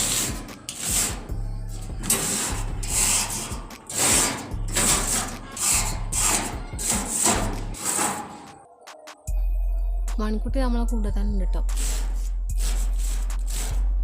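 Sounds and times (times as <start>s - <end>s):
wire brush scraping metal bars: 0.0s - 8.6s, 11.7s - 13.9s.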